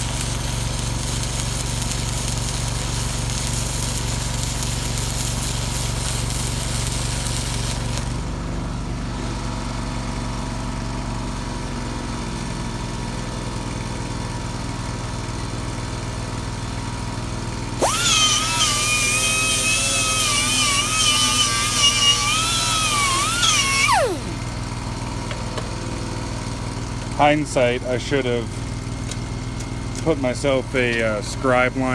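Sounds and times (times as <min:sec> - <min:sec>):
air tool hissing: 0:00.0 - 0:08.4, 0:17.8 - 0:24.5
air tool whining: 0:00.0 - 0:08.7, 0:17.8 - 0:24.6
air compressor humming: 0:17.8 - 0:24.6.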